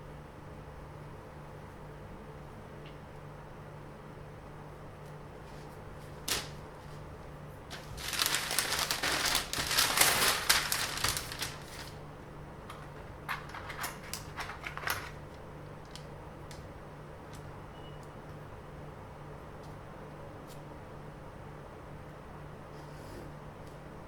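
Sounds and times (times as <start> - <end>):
crackly rustling and clicking: 6.2 - 7.1, 7.7 - 12.0, 12.6 - 18.4.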